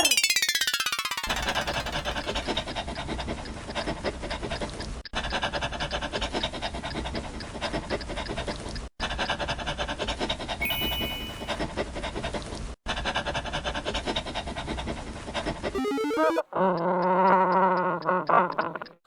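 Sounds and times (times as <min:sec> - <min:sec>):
dog panting: 0:02.6 - 0:10.5.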